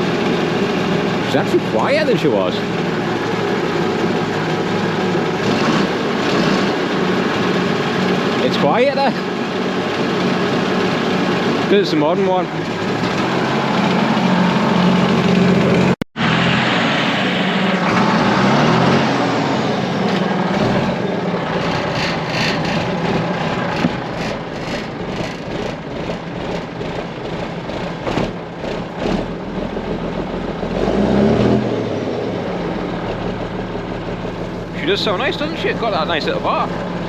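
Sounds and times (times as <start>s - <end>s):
diesel lorry engine running: 0.0s - 37.0s.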